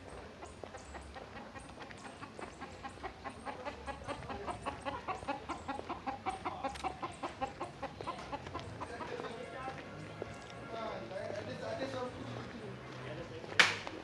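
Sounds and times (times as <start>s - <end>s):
chickens clucking: 0.0s - 9.5s.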